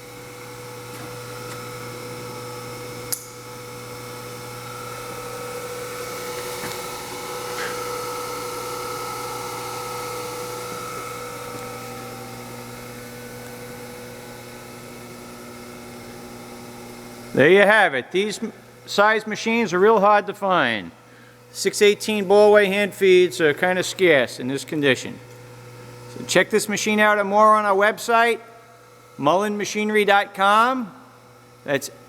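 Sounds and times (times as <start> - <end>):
surface grinder motor whine: 0.0 - 17.6.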